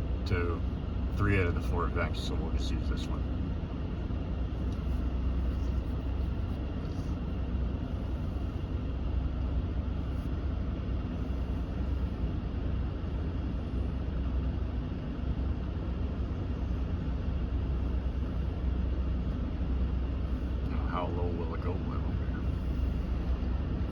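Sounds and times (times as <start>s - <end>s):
air rushing from vents: 0.0s - 23.9s
truck engine idling: 0.0s - 23.9s.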